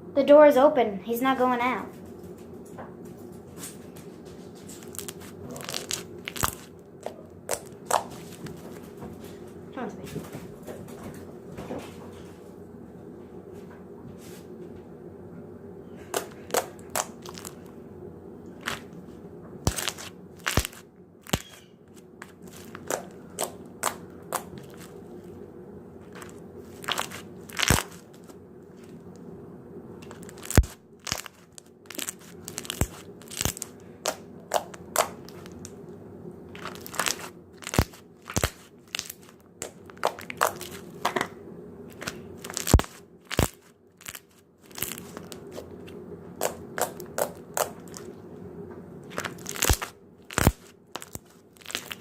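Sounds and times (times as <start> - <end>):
slime popping and crackling: 4.8 - 8.6, 16.1 - 17.7, 18.6 - 18.9, 19.7 - 25.0, 26.0 - 28.4, 30.0 - 35.8, 36.6 - 41.1, 41.9 - 45.7, 46.4 - 48.1, 49.1 - 52.0.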